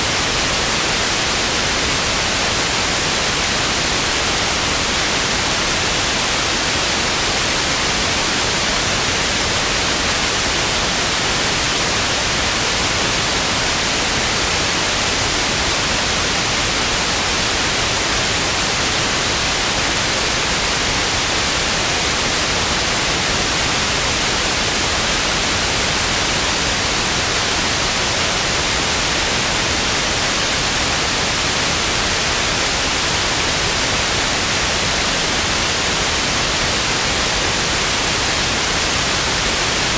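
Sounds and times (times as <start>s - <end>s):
television static hiss: 0.0s - 39.9s.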